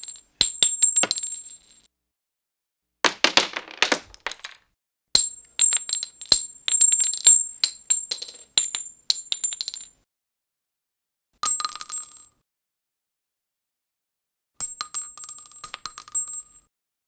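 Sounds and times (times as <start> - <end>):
metal casings clinking on asphalt: 5.2 - 10.0.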